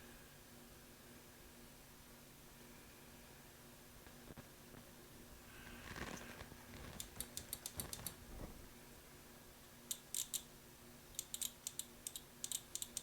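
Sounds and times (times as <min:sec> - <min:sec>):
brief rustle: 0:05.6 - 0:08.6.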